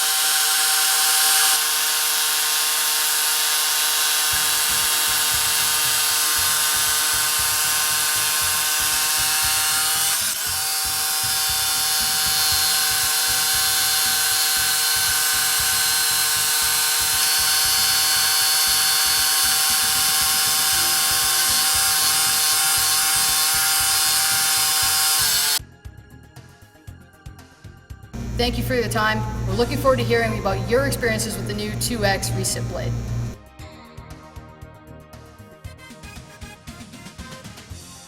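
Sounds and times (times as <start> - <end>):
reciprocating saw cutting steel: 0.0 - 25.6.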